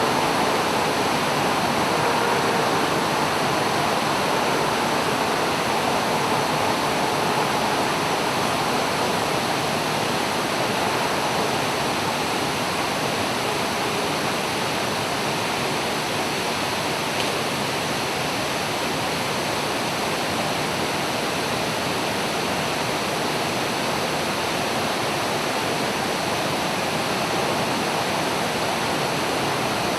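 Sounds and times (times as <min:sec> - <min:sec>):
waterfall rushing: 0:00.0 - 0:29.9.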